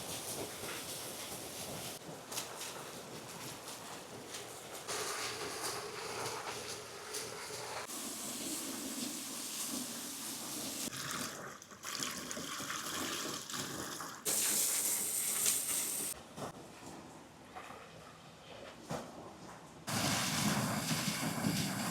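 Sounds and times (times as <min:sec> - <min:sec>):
water rushing down waterslides: 0:19.9 - 0:21.9.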